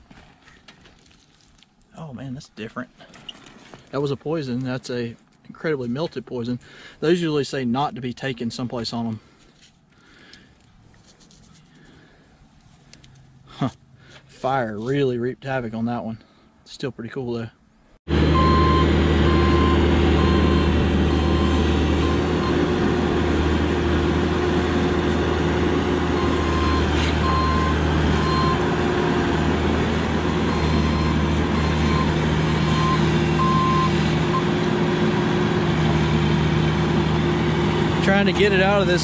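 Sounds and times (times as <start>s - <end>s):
excavator diesel engine running: 18.1s - 39.0s.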